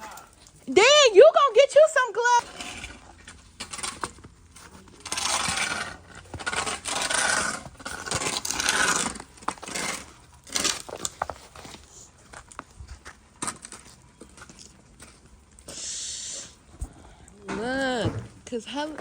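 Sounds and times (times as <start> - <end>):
icy snow being scraped: 5.0 - 11.6.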